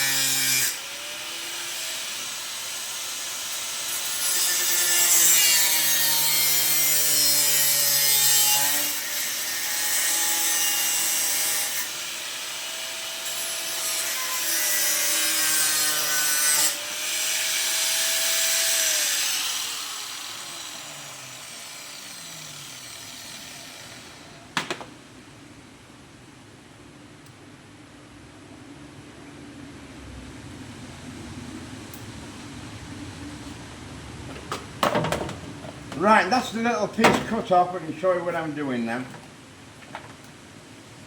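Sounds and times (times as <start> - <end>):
electric grinder cutting steel: 0.0 - 24.4
grinder spinning down whine: 19.8 - 24.4.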